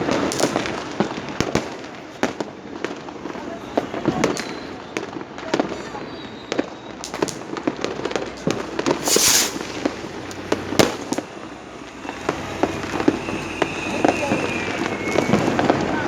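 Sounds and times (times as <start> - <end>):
firecrackers banging: 0.0 - 16.0
whistling rocket: 4.1 - 5.1, 6.0 - 7.5, 8.9 - 16.0
short hissing burst: 9.0 - 10.1.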